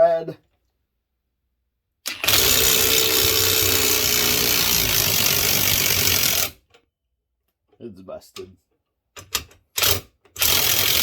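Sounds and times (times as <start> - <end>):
impact wrench hammering: 2.1 - 6.5.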